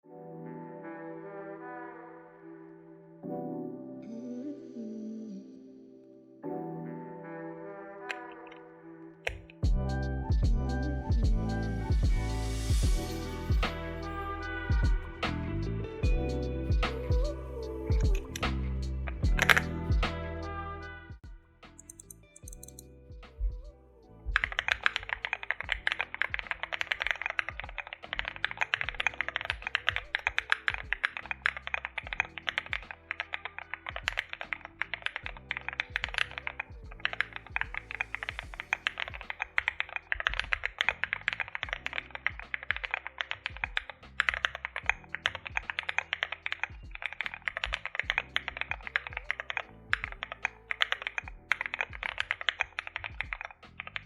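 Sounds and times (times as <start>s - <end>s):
fast mechanical keyboard typing: 24.4s - 54.0s.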